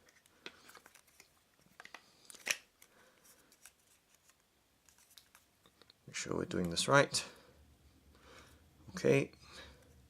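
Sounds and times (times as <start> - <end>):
clicks and scrapes of gooseneck arm: 0.0 - 2.9.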